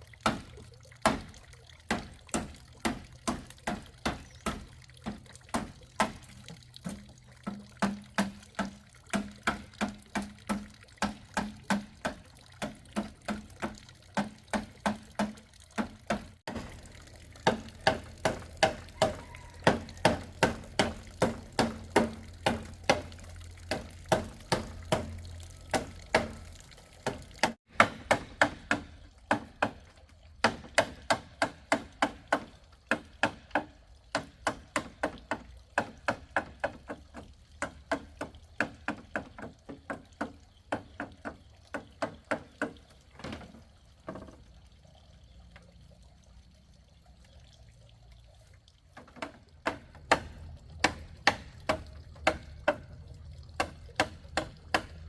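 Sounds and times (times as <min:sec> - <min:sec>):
sharp knocks of striking tool: 0:17.4 - 0:26.4, 0:27.1 - 0:29.8, 0:49.2 - 0:52.9, 0:53.6 - 0:55.0.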